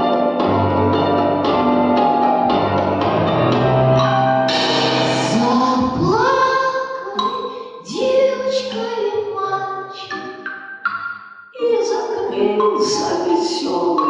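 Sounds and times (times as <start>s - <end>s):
musical accompaniment: 0.0s - 14.0s
person singing: 5.1s - 10.4s, 11.6s - 14.0s.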